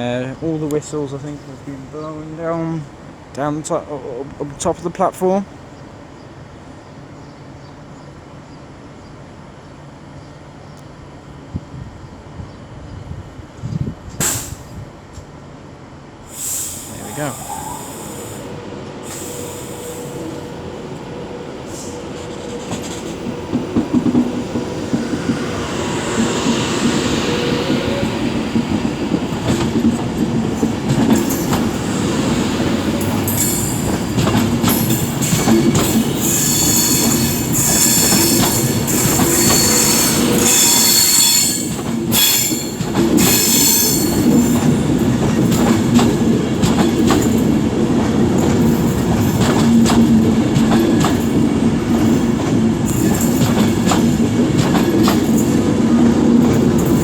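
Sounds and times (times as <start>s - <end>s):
electric train pulling out: 16.2s - 57.0s
high wheel squeal: 16.4s - 20.7s, 34.8s - 44.5s.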